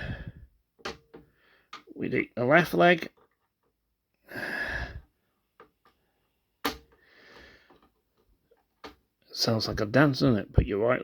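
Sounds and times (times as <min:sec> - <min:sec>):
sharp plastic snap: 0:06.6 - 0:07.0.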